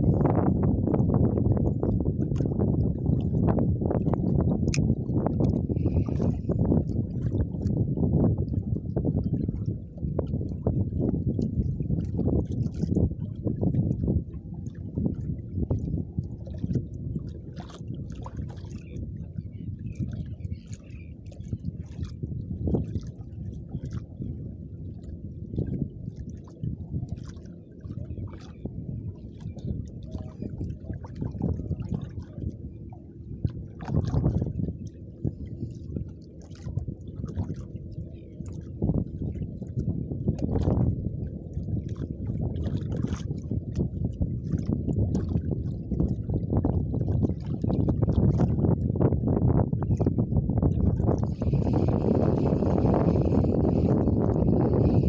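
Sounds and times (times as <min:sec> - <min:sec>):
low rumble of wind: 0:00.0 - 0:55.0
water slapping against boat hull: 0:02.2 - 0:07.8, 0:11.3 - 0:24.1, 0:25.6 - 0:32.6, 0:33.4 - 0:37.8, 0:38.4 - 0:48.9.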